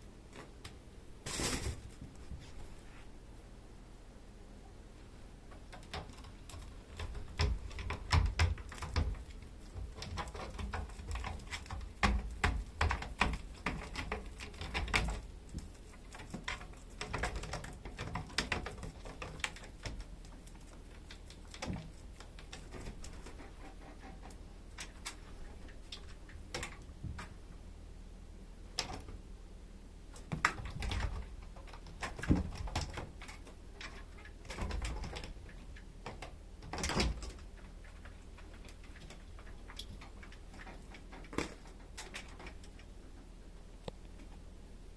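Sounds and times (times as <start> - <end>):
kittens playing taps and clicks: 5.5 - 27.4, 30.1 - 43.2.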